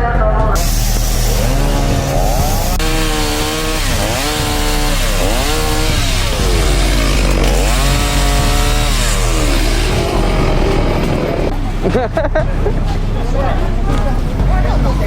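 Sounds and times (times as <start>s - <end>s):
chainsaw cutting wood: 0.6s - 11.5s.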